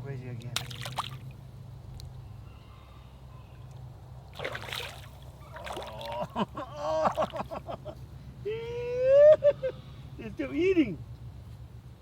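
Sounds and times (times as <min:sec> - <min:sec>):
fish splashing at water surface: 0:00.6 - 0:01.4, 0:04.3 - 0:06.4.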